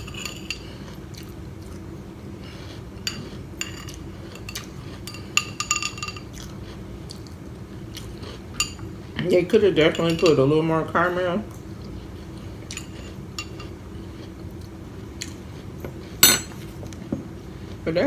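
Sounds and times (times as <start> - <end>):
spoon clinking against bowl: 16.2 - 16.7.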